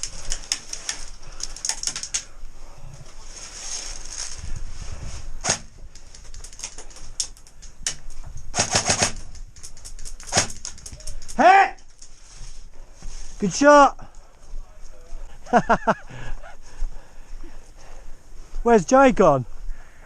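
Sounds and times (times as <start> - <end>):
airsoft guns firing: 5.4 - 5.7, 8.5 - 9.3, 10.3 - 10.7.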